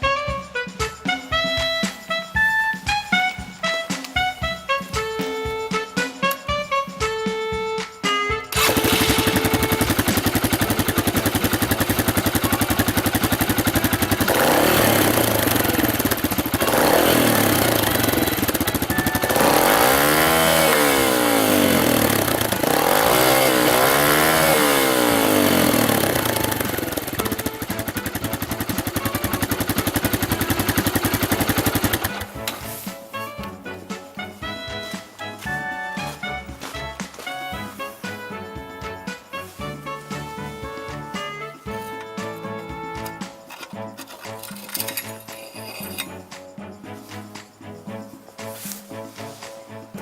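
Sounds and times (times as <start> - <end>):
motorcycle engine revving: 8.5 - 34.3.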